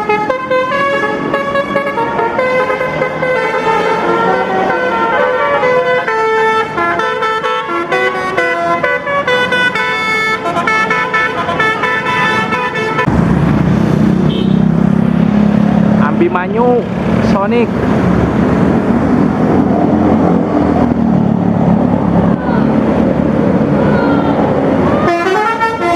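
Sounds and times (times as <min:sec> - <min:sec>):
bus multi-tone horn melody: 0:00.0 - 0:13.2, 0:14.2 - 0:14.8, 0:24.9 - 0:25.9
loud low rumble: 0:13.1 - 0:16.2.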